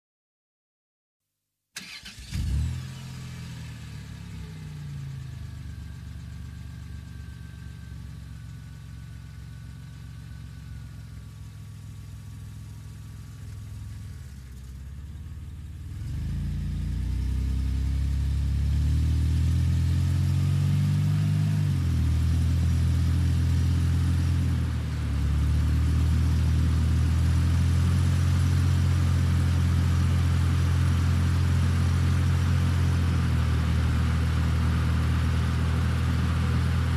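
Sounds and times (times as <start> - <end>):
car engine idling and revving: 1.8 - 36.9.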